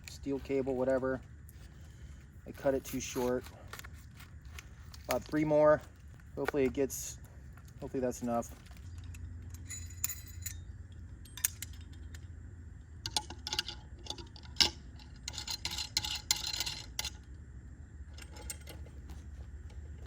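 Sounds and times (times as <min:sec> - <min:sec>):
small metal hardware clinking: 0:08.4 - 0:12.3, 0:13.0 - 0:17.3, 0:18.1 - 0:20.0.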